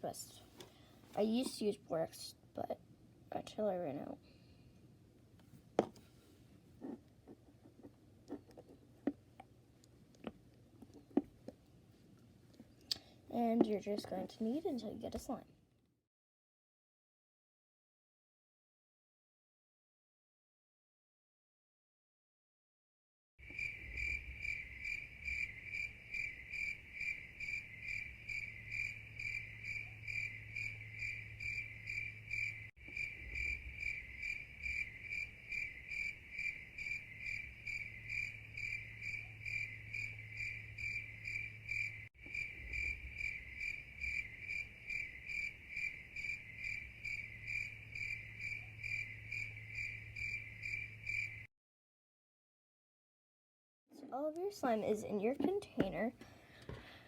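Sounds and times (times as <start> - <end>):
cricket chirping: 23.4 - 51.5.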